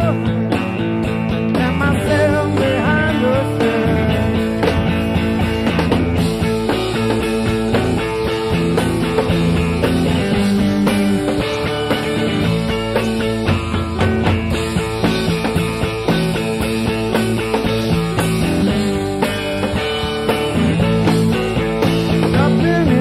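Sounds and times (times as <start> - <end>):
instrumental rock music: 0.0 - 23.0.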